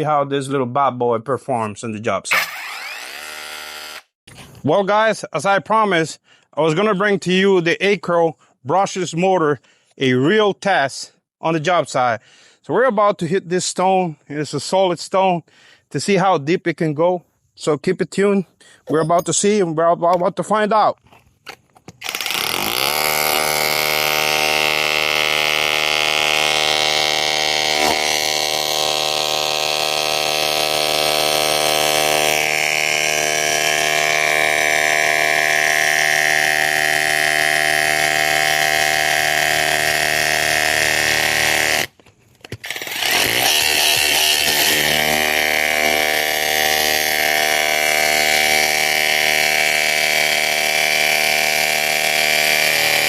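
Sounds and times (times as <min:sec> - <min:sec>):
rotary hammer drilling into stone: 0:02.3 - 0:04.2, 0:21.5 - 0:53.0.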